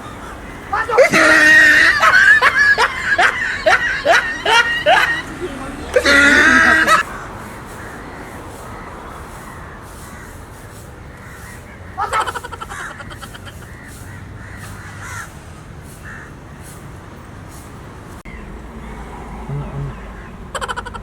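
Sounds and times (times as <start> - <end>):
harsh animal calls: 0.0 - 8.2, 19.4 - 21.0.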